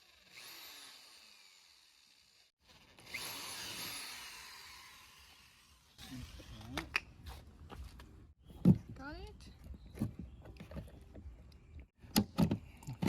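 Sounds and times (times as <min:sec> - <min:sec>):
electric drill whirring: 0:00.0 - 0:06.7.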